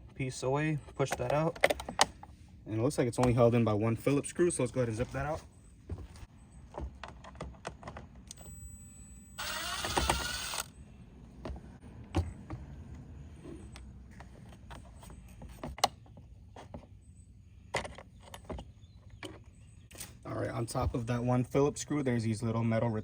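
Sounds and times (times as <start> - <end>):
cordless power driver spinning: 9.4 - 10.8.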